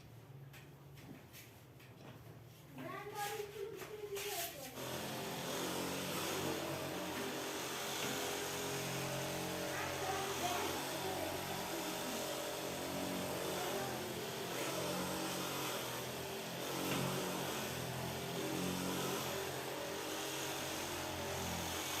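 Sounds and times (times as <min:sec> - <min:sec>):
electric motor hum: 0:04.8 - 0:22.0.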